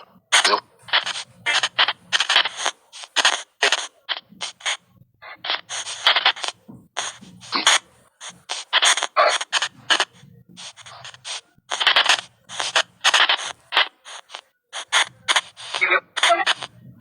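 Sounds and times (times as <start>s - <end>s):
choppy static bursts: 0.0s - 17.0s.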